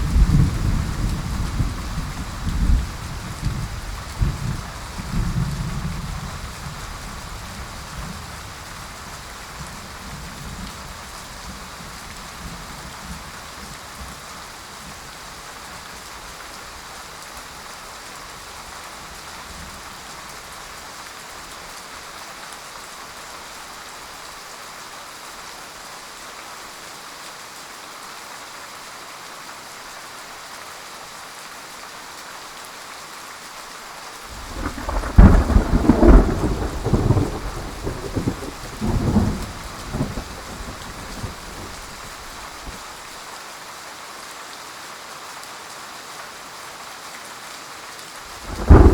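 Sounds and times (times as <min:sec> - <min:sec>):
heavy rain hissing: 0:00.0 - 0:22.4, 0:33.6 - 0:47.0, 0:48.0 - 0:48.9
low thunder rumble: 0:34.3 - 0:42.8, 0:48.4 - 0:48.9
loud thunder clap: 0:34.4 - 0:42.2, 0:48.5 - 0:48.9.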